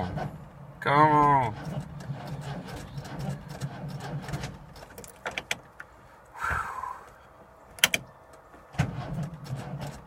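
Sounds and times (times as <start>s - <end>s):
engine cranking on starter: 1.1s - 5.0s.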